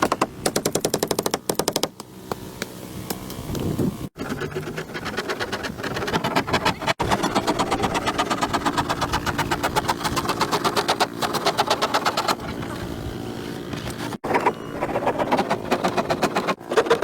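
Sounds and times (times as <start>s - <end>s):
small motorbike engine running: 0.0s - 17.0s.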